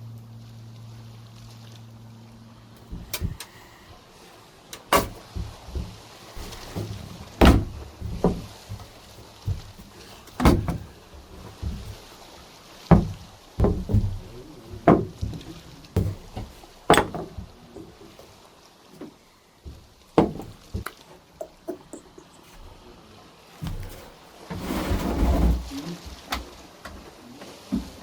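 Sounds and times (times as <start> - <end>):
irregular knocks and thumps: 2.8 - 3.9, 4.7 - 12.2, 12.8 - 18.3, 19.0 - 22.7, 23.6 - 24.0.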